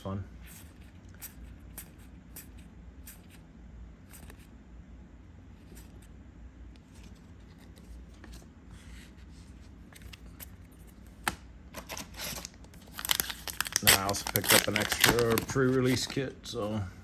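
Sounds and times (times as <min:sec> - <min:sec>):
cards rustling: 0:06.8 - 0:16.8.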